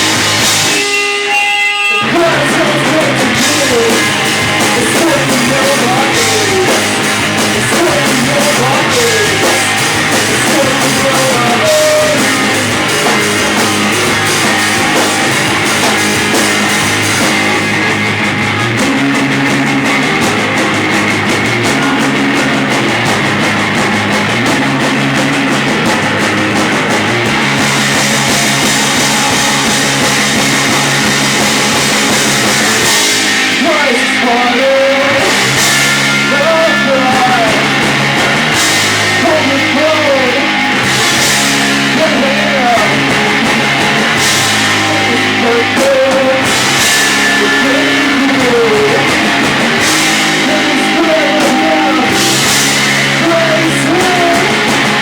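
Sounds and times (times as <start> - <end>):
drum kit: 0.0 - 55.0
electric guitar: 0.0 - 55.0.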